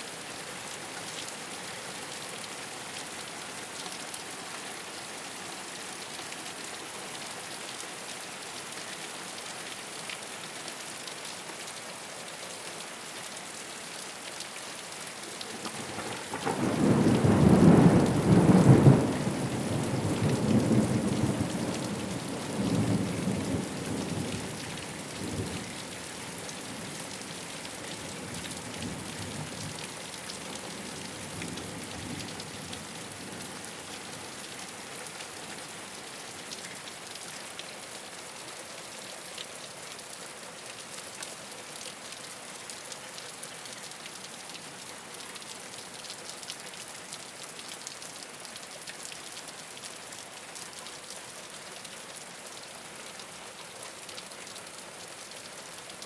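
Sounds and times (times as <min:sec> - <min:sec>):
rain on a rooftop: 0:00.0 - 0:56.0
thunder rumbling: 0:15.6 - 0:21.0.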